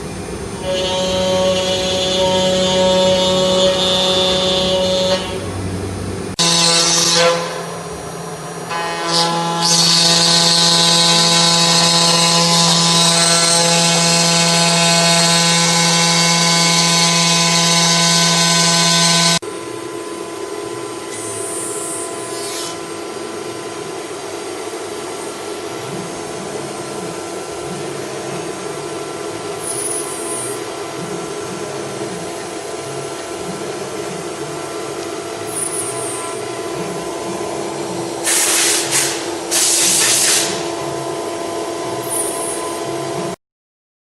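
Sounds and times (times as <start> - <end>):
router spindle whine: 6.4 - 43.4
hissing cutting noise: 34.2 - 41.0.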